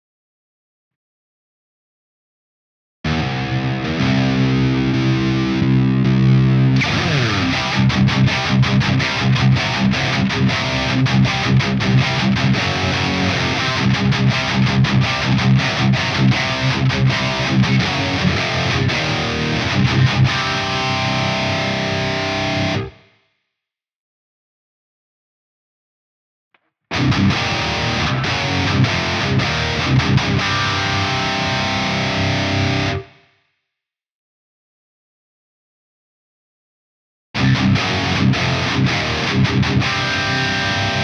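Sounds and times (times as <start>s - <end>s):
distorted electric guitar riff: 3.1s - 23.0s, 26.9s - 33.2s, 37.4s - 41.0s.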